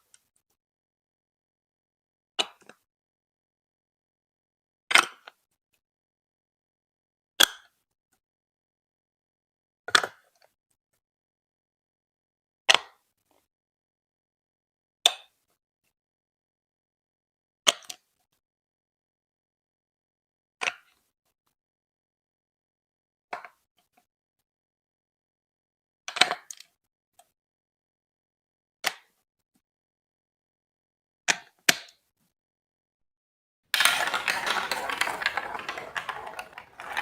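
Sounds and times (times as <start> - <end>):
plastic bricks clicking into place: 33.8 - 37.0.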